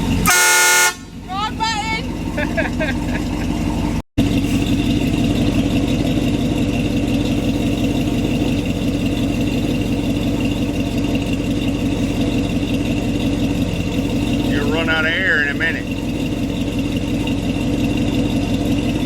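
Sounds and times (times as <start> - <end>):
pickup engine idling: 0.0 - 19.0.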